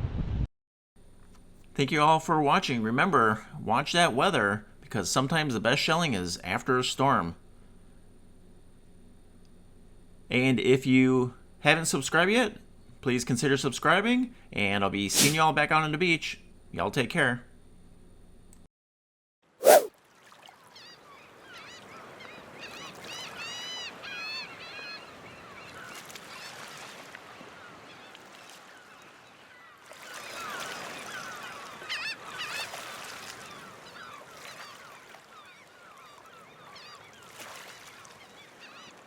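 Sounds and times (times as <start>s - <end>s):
steady hiss: 15.1s - 15.5s.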